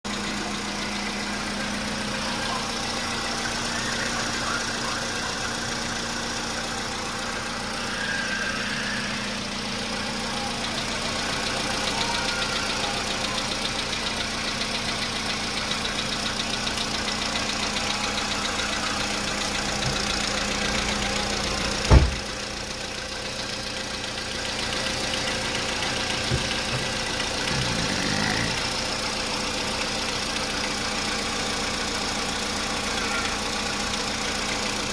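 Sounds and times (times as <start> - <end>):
car engine running with knock: 0.1 - 34.9
sharp loud thump: 21.9 - 22.3.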